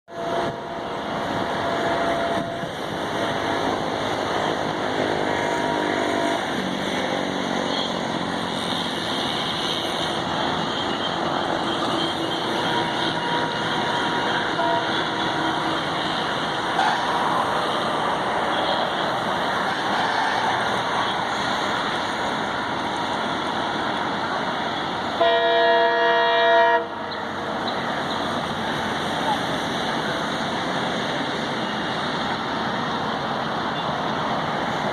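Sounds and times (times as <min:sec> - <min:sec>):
train horn: 0:00.1 - 0:03.7, 0:05.0 - 0:06.6, 0:08.6 - 0:19.1, 0:25.2 - 0:27.1
diesel locomotive passing: 0:00.1 - 0:34.9.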